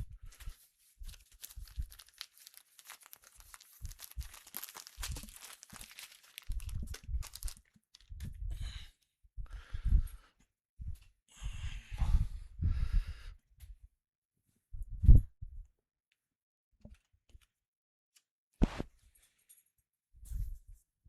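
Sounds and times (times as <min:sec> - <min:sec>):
handling rustling: 0:01.0 - 0:08.1
package wrapping crinkling: 0:01.0 - 0:08.1.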